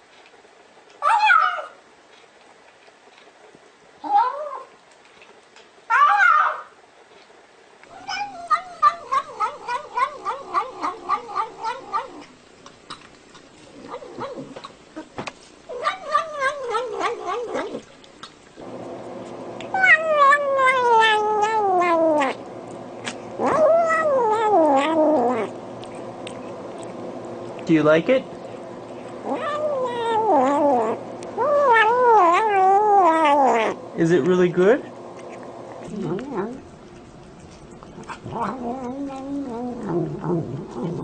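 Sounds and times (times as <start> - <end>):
cat yowling: 1.0 - 1.8, 4.0 - 4.7, 5.9 - 6.7, 7.9 - 12.3, 15.7 - 17.8, 19.7 - 22.4, 23.4 - 25.6, 29.2 - 33.8, 38.0 - 40.2
steady hum: 7.8 - 41.0.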